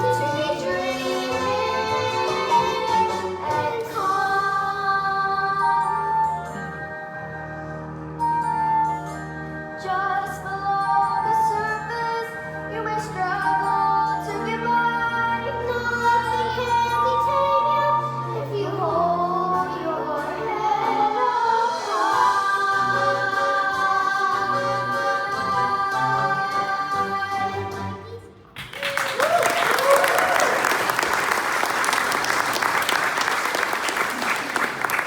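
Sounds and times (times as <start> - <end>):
young voices singing: 0.0 - 6.3, 9.8 - 28.2
instrumental accompaniment: 0.0 - 28.6.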